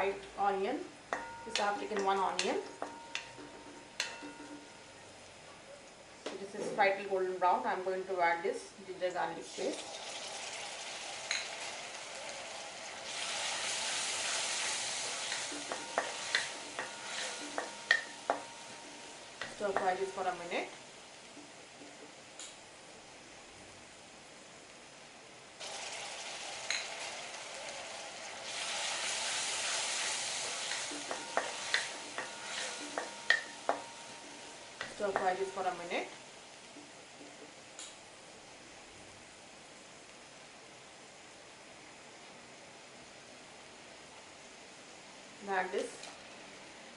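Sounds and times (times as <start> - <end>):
onions sizzling in hot oil: 9.4 - 21.4, 25.6 - 36.7
spoon knocking against pan: 15.3 - 20.0, 30.7 - 35.4.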